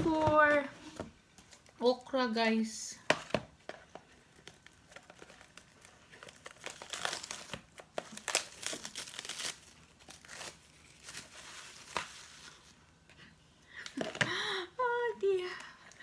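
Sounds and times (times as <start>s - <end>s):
food packaging crinkling: 3.8s - 12.9s.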